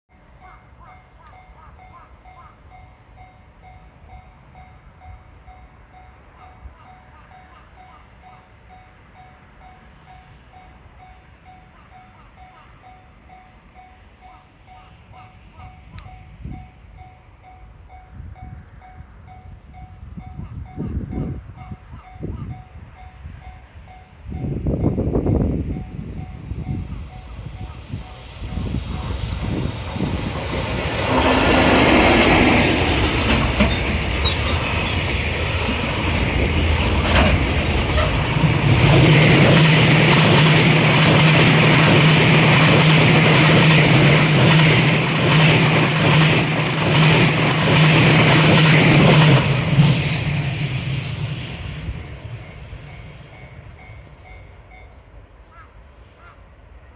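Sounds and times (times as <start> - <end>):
freight train passing: 0.1 - 56.9
train wheels on rails: 23.9 - 56.4.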